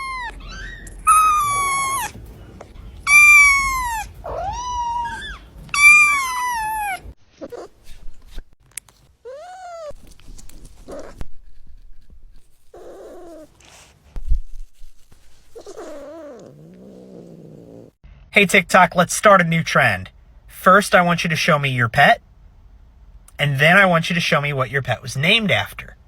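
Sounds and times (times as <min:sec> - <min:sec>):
cat meowing: 0:00.0 - 0:02.2, 0:03.0 - 0:07.8, 0:09.3 - 0:10.0.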